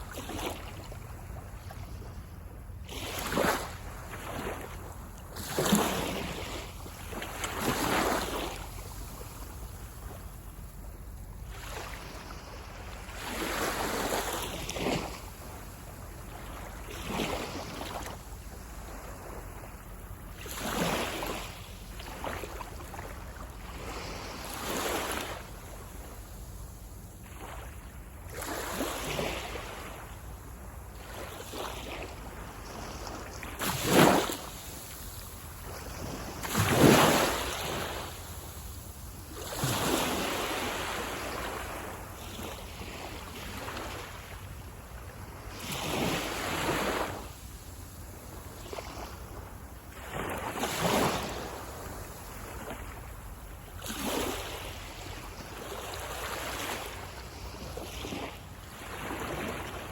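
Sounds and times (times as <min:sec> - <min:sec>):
low rumble of wind: 0:00.0 - 0:59.9
sea waves breaking on beach: 0:00.0 - 0:59.9.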